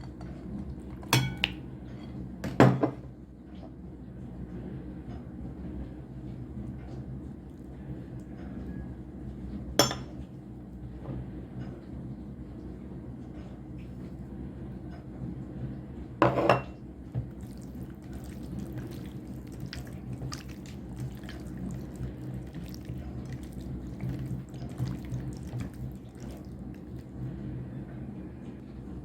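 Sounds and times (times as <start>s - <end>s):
low steady hum: 0.0s - 29.0s.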